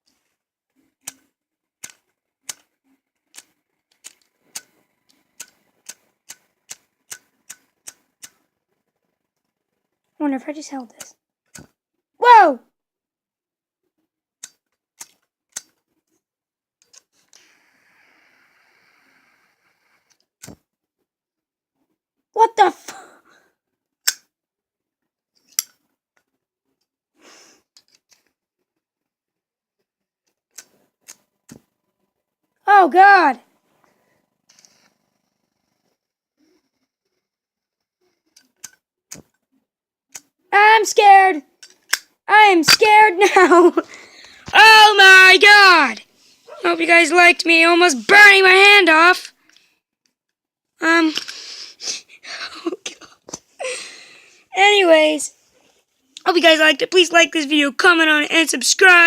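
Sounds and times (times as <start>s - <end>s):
lighter flint wheel clicking: 5.4s - 8.4s, 14.4s - 15.8s, 24.0s - 24.3s, 38.3s - 39.2s, 41.6s - 42.1s.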